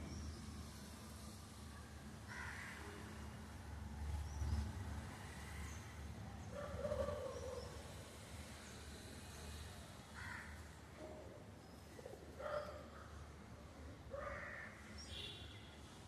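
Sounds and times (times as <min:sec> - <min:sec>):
crow cawing: 0:02.3 - 0:02.8, 0:10.2 - 0:10.6, 0:14.2 - 0:14.8.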